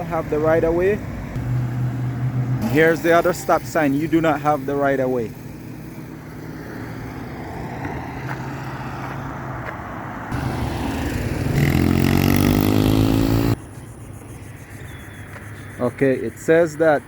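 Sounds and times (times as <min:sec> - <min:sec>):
road noise: 0:00.0 - 0:17.0
vehicle engine accelerating: 0:00.5 - 0:13.6.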